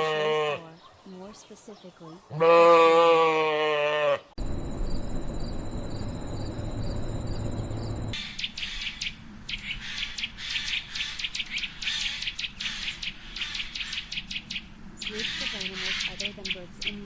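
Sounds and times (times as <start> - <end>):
faint high trill: 4.4 - 8.2
insects chirping: 4.4 - 8.2
low rumbling noise: 4.4 - 8.2.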